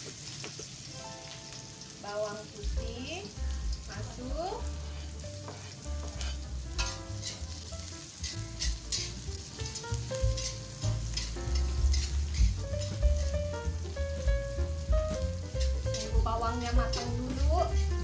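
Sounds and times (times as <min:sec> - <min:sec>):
garlic sizzling in hot oil: 0:00.0 - 0:18.0
utensil clinking and scraping pan: 0:05.5 - 0:13.6, 0:15.4 - 0:18.0.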